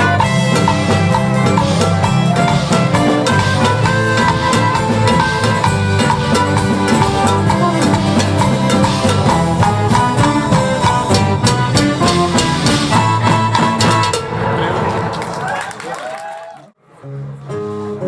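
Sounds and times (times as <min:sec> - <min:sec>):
instrumental band music: 0:00.0 - 0:15.4
drums keeping a steady beat: 0:00.0 - 0:15.9.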